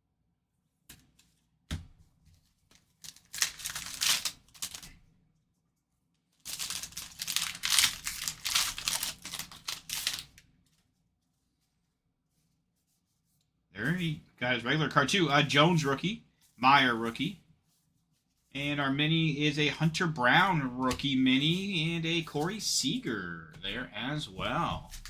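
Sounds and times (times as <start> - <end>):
foil wrapper tearing and crinkling: 2.9 - 5.0, 6.4 - 10.4.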